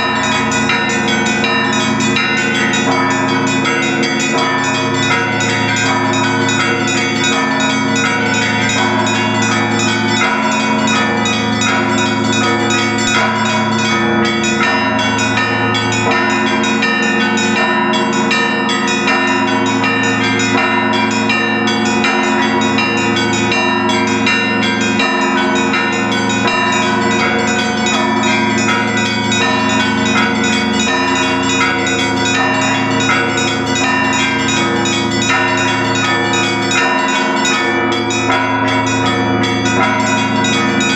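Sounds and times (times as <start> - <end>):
church bells ringing rapidly: 0.0 - 40.9
deep bells humming: 0.0 - 40.9.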